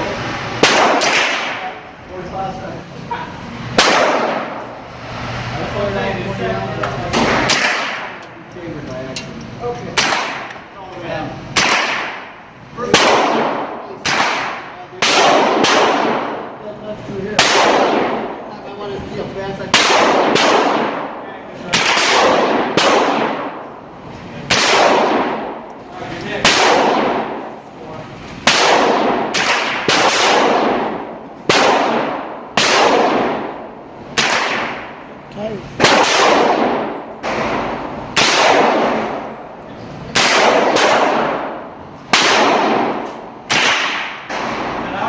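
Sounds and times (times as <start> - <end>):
rifle shots with echo: 0.6 - 1.9, 3.7 - 4.7, 7.2 - 8.3, 10.0 - 10.7, 11.5 - 16.6, 17.3 - 18.5, 19.7 - 23.8, 24.5 - 27.6, 28.4 - 35.2, 35.8 - 39.4, 40.1 - 45.0.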